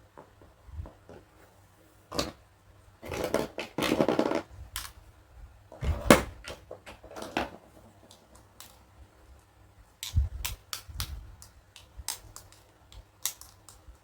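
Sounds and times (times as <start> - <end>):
plastic pieces scraping and rattling: 3.0 - 5.0, 5.7 - 8.8, 11.7 - 14.0
plastic toy pieces clicking: 10.0 - 14.0.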